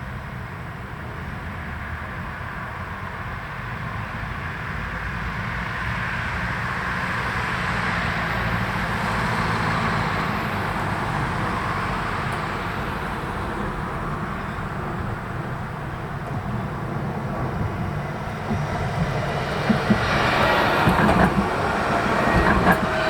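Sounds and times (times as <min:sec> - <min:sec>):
tram rolling rumble: 0:00.0 - 0:23.0.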